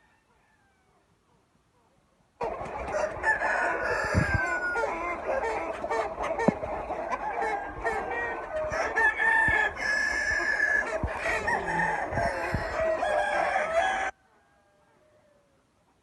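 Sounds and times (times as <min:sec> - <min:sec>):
rooster crowing: 0:00.0 - 0:01.0, 0:02.8 - 0:05.6, 0:07.2 - 0:15.5
chickens clucking: 0:00.2 - 0:14.2.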